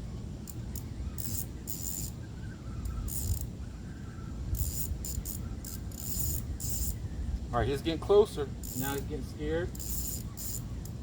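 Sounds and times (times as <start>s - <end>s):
fishing reel clicking: 1.2s - 2.1s, 3.1s - 3.5s, 4.6s - 7.0s, 8.6s - 9.0s, 9.7s - 11.0s.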